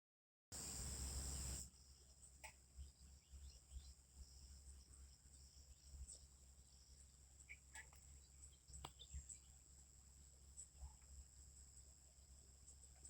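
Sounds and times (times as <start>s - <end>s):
insects chirring: 0.6s - 13.0s
bird chirps: 1.3s - 9.7s.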